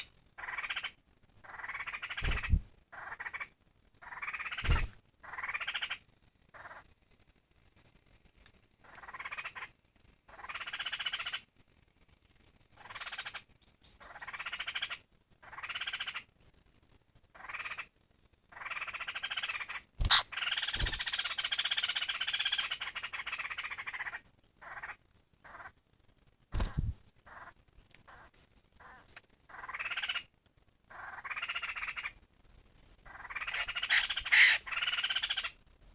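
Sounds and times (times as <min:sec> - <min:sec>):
bird harsh rasping calls: 0:20.0 - 0:22.8, 0:33.2 - 0:35.5.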